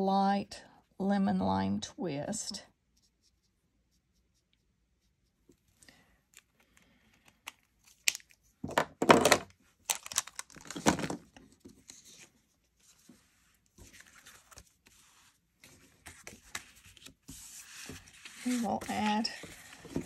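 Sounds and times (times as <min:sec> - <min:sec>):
soft paper rustling: 0:09.6 - 0:20.0.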